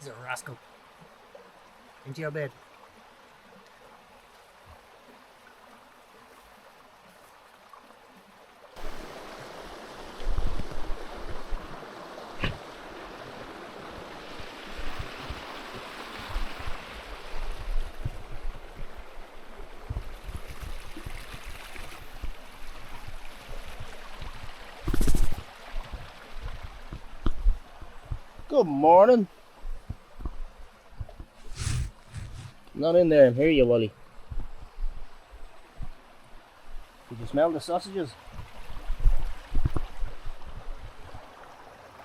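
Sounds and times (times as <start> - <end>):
river water rushing: 0.7 - 17.7
faint hiss: 31.4 - 33.8.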